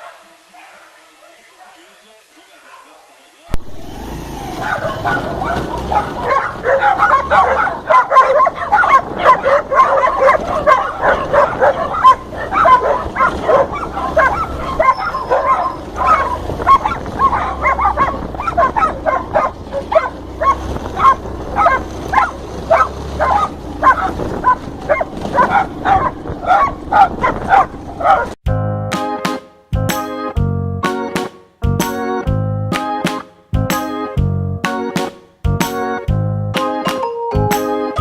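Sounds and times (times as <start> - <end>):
dog barking rapidly: 4.5 - 28.4.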